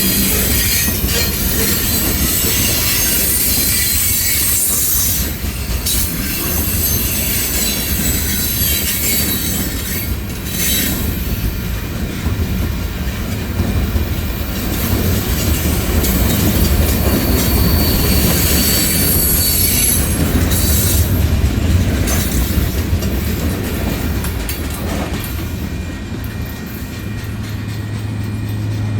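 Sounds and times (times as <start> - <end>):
train wheels rumbling on rail: 0.0 - 28.9
wheels clacking over rail joints: 0.0 - 28.9
high-pitched wheel squeal: 17.0 - 21.0.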